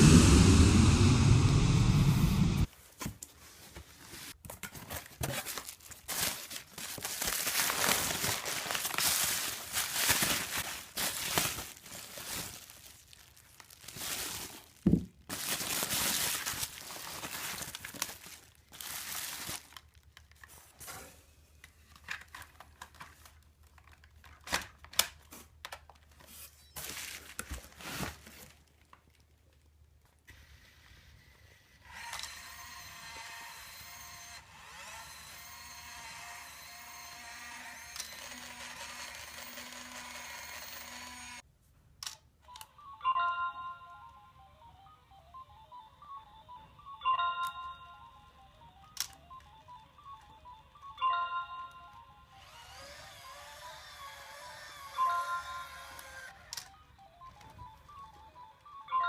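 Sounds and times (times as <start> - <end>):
crinkling and rustling: 2.7 - 30.2.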